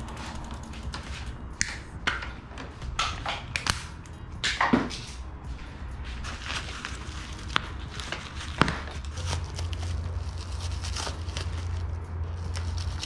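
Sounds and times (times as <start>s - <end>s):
steady low hum: 0.0s - 13.0s
packing material rustling: 6.1s - 13.0s.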